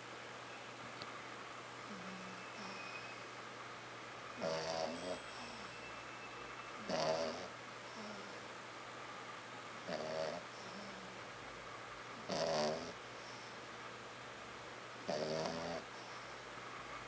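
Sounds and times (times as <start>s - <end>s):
dog snoring: 1.9s - 3.4s, 4.4s - 5.9s, 6.8s - 8.6s, 9.8s - 11.3s, 12.2s - 13.7s, 15.0s - 16.4s
dog breathing softly: 9.9s - 11.3s, 13.0s - 13.8s, 15.4s - 16.6s.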